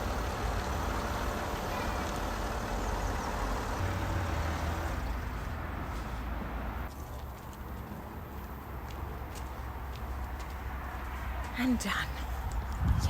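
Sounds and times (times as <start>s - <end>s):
car engine running: 0.0s - 5.9s.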